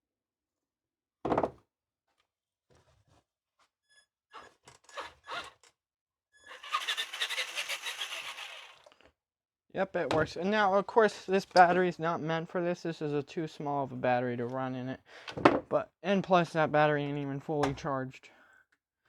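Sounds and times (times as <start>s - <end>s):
thunk: 1.3s - 1.6s, 15.3s - 15.6s
toy truck electric motor running: 4.3s - 5.7s, 6.4s - 9.0s.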